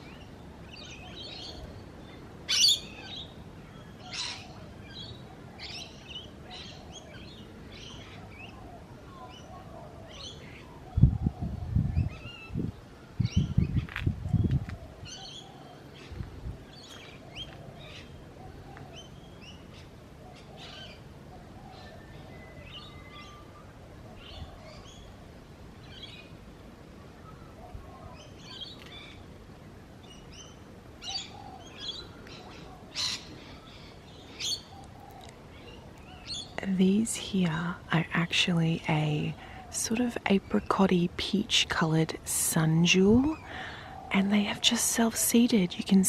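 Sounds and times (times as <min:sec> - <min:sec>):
small birds chirping: 0:00.0 - 0:25.2, 0:30.0 - 0:46.0.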